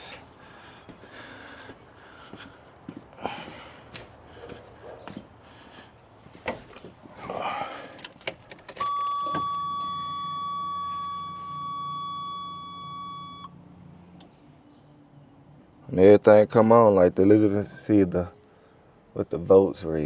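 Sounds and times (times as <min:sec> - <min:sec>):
car keys jangling: 0:07.8 - 0:10.2
car warning chime beep: 0:08.7 - 0:14.4.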